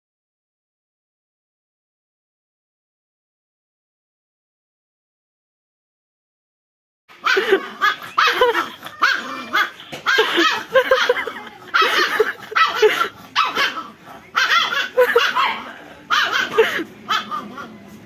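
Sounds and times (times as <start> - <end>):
dog barking: 7.2 - 17.7.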